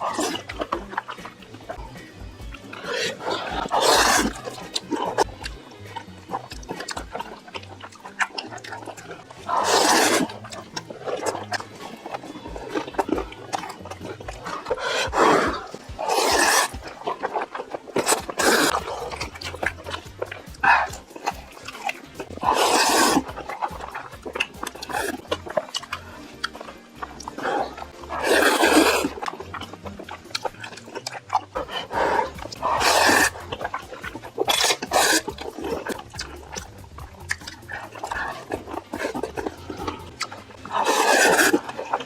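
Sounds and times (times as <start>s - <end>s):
wet chewing and mouth smacking: 0.0s - 42.0s.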